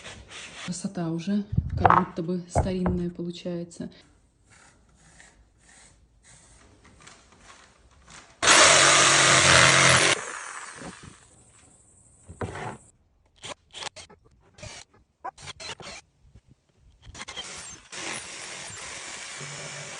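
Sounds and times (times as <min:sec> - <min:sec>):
handling knocks and scrapes: 0:01.6 - 0:03.2, 0:10.8 - 0:12.9
power tool cutting wood: 0:08.4 - 0:11.2, 0:17.2 - 0:19.9.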